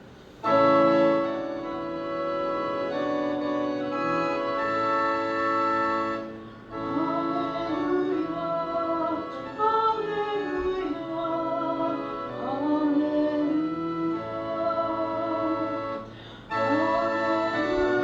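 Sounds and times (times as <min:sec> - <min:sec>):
organ chords: 0:00.0 - 0:18.0
person singing: 0:06.8 - 0:18.0.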